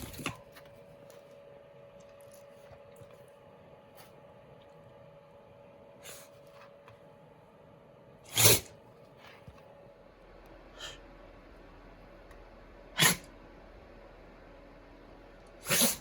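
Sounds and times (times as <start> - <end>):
dog sneezing: 8.3 - 8.8, 12.9 - 13.3, 15.6 - 16.0.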